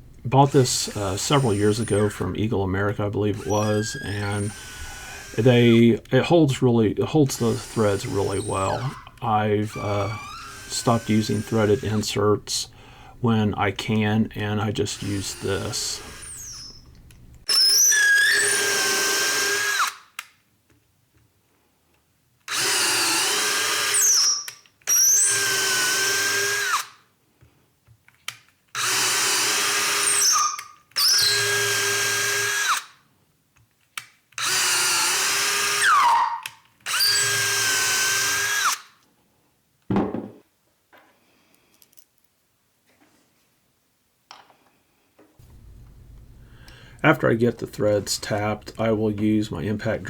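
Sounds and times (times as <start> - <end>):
power drill motor spinning: 0.0 - 20.0, 22.5 - 26.9, 28.8 - 32.9, 34.4 - 38.9, 45.4 - 50.0
brief knock: 39.9 - 40.4.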